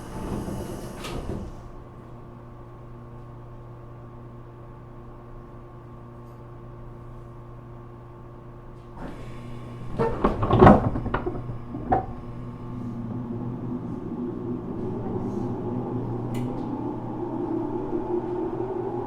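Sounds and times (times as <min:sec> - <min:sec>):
train clunks and bangs: 0:09.0 - 0:15.5
traction motor whine: 0:09.0 - 0:19.0.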